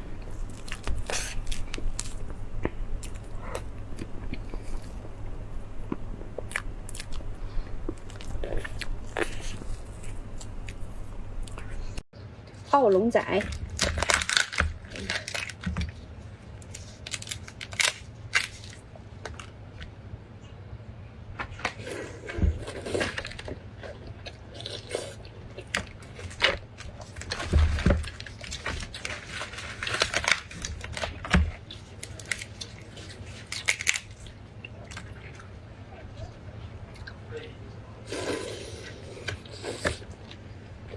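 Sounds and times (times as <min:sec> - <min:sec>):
chewing and crunching meat: 0:00.0 - 0:12.0, 0:21.8 - 0:35.9.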